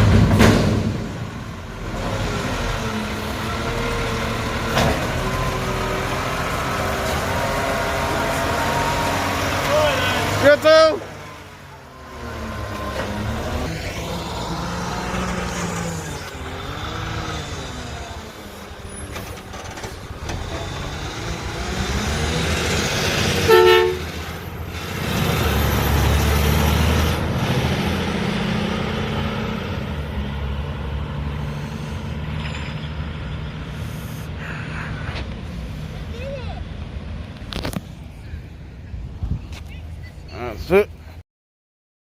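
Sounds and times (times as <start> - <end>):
garbage truck diesel engine: 0.0 - 38.9
short horn toot: 23.4 - 24.2.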